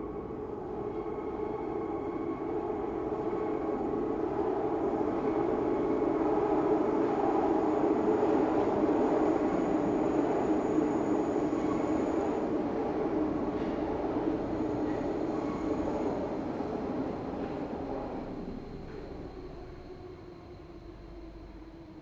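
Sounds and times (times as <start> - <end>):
train wheels rumbling on rails: 4.7 - 21.9.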